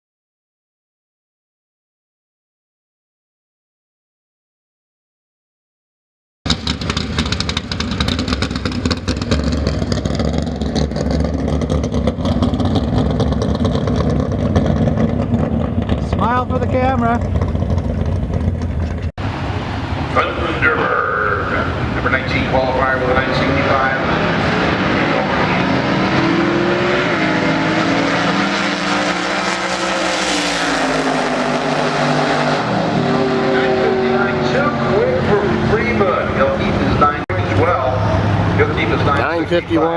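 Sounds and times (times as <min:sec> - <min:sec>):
loud drag car engine running: 0:06.5 - 0:39.9.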